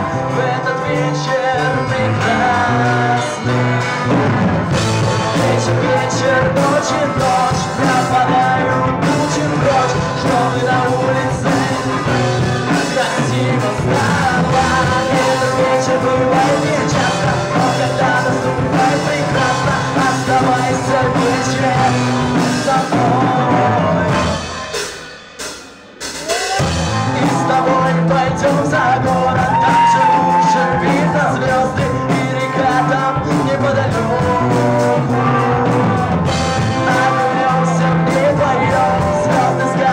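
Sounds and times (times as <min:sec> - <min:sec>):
person singing: 0:00.0 - 0:24.9, 0:26.1 - 0:39.9
rock band playing love song: 0:00.0 - 0:39.9.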